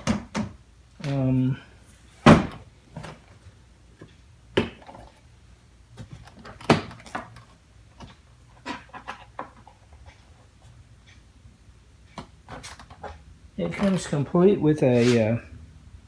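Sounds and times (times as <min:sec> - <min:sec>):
plastic toolbox knocks and clicks: 0:00.0 - 0:00.6, 0:02.2 - 0:03.3, 0:06.0 - 0:08.1.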